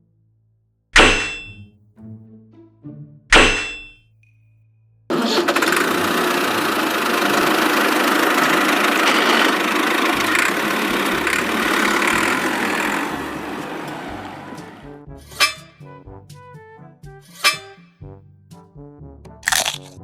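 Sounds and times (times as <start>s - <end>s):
small motor running: 5.1s - 14.8s.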